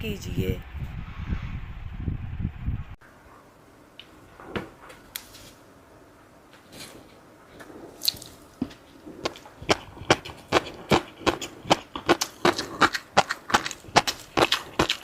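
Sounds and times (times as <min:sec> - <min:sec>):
chewing and crunching: 0:08.0 - 0:15.0.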